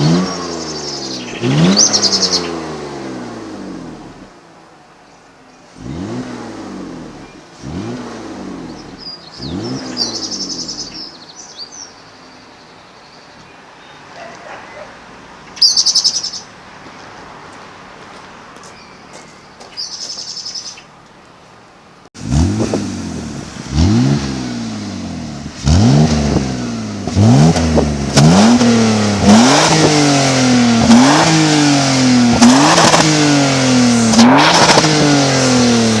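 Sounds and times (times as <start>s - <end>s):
car engine revving: 0.0s - 4.5s, 5.7s - 11.2s, 22.2s - 36.0s
birds chirping: 0.0s - 36.0s.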